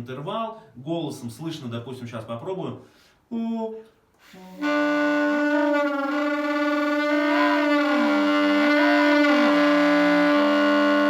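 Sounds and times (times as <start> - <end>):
person singing through saxophone: 4.2 - 11.0
saxophone growl: 4.2 - 11.0.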